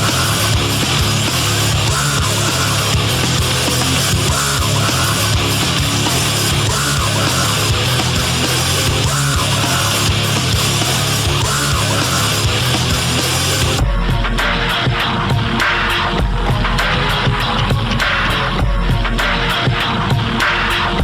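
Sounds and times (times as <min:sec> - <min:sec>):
loud heavy metal music: 0:00.0 - 0:21.0.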